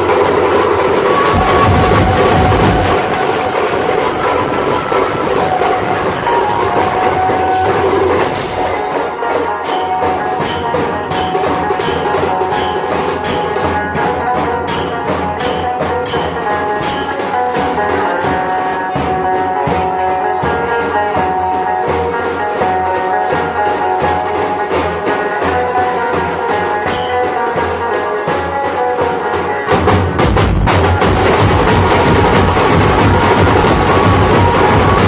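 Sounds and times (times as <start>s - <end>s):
drumming: 0.0s - 35.0s
held melody: 0.9s - 28.7s.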